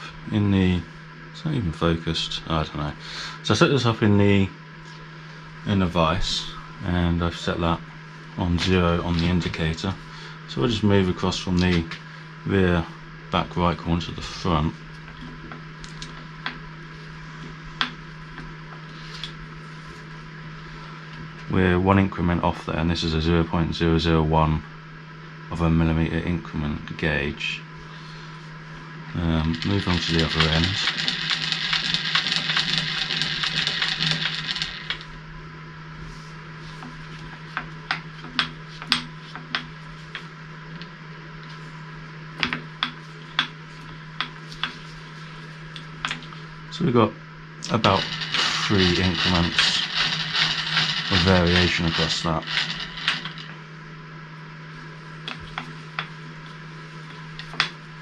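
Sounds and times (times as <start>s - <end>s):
steady hum: 0.0s - 58.0s.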